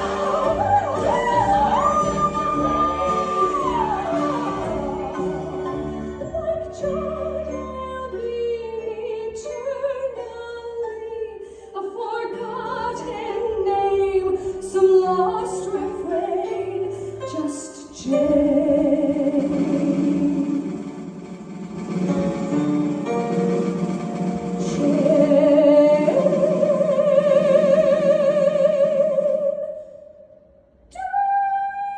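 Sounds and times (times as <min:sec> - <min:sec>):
instrumental accompaniment: 0:00.0 - 0:10.9, 0:17.4 - 0:28.7
soprano singing operatically: 0:00.0 - 0:20.8, 0:24.6 - 0:29.8, 0:30.9 - 0:31.9.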